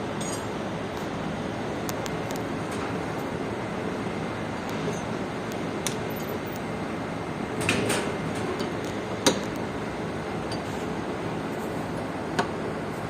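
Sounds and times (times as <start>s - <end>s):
tools clinking on metal: 0.2s - 0.5s.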